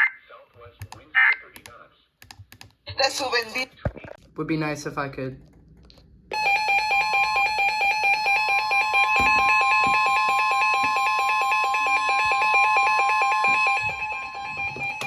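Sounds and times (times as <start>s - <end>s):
steady alarm tone: 6.3s - 15.0s.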